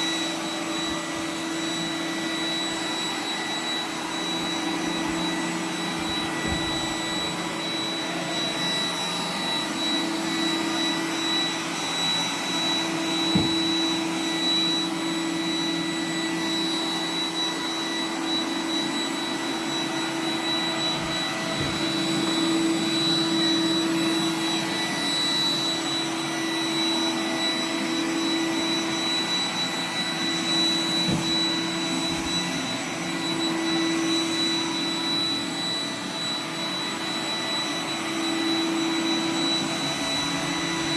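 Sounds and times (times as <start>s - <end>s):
robot vacuum motor hum: 0.4s - 14.7s.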